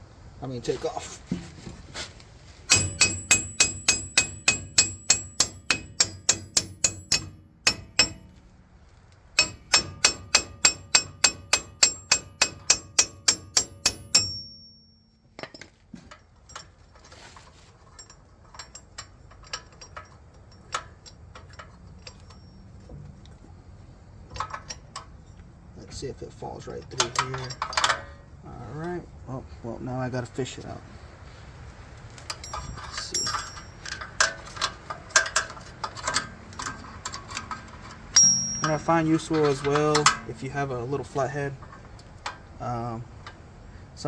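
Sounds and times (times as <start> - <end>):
hammer blows on steel: 2.7 - 8.4, 9.4 - 15.3
light metal clinks and taps: 9.4 - 17.2, 32.2 - 40.3.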